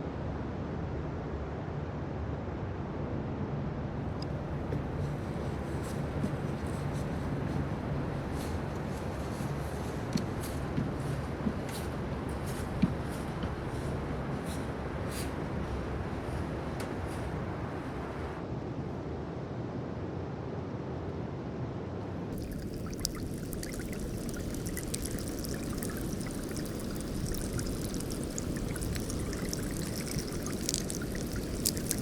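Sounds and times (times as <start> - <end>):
dense crackle of tiny clicks: 22.3 - 32.0
meltwater rushing: 22.3 - 32.0.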